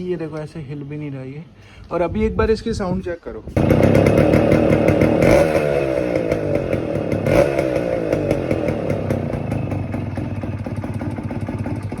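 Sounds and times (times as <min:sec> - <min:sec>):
two-stroke motorcycle engine revving: 0:03.6 - 0:12.0.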